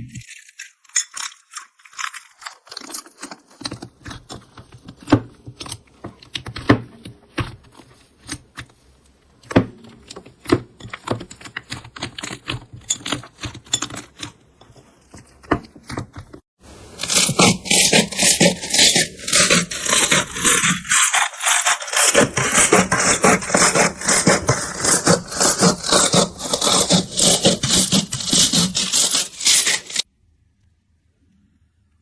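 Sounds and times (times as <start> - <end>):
crunchy slime crackling by hand: 0.3 - 5.8.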